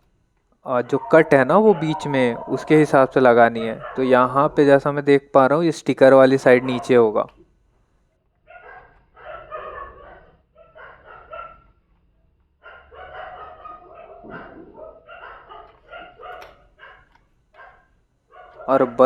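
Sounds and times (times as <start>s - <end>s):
dogs barking: 0.7s - 4.8s, 6.1s - 7.3s, 8.4s - 11.8s, 12.6s - 19.0s.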